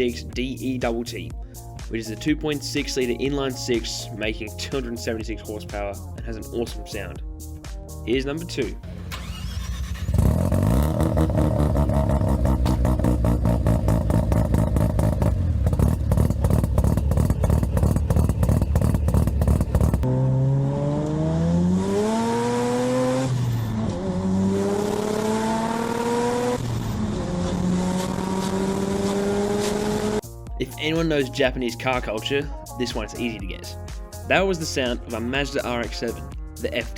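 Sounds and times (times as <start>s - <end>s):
rotary engine accelerating: 8.8s - 30.3s.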